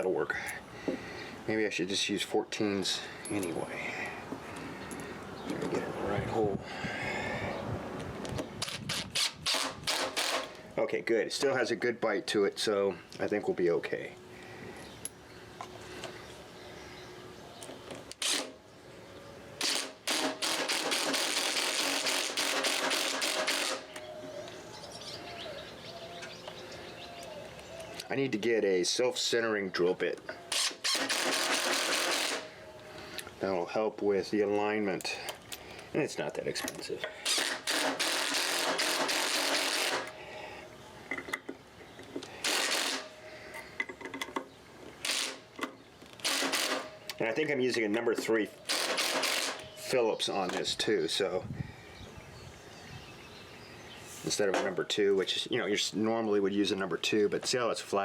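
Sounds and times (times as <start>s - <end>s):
cordless drill driving a screw: 8.6s - 10.6s, 18.1s - 18.6s, 19.6s - 24.0s, 30.5s - 32.5s, 37.2s - 40.1s, 42.4s - 43.1s, 45.0s - 45.4s, 46.2s - 46.9s, 48.7s - 49.6s.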